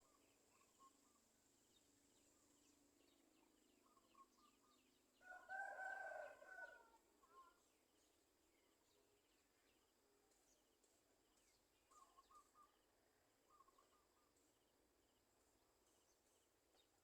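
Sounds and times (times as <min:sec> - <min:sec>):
faint bird chirps: 0:00.0 - 0:17.0
rooster crowing: 0:05.2 - 0:07.0.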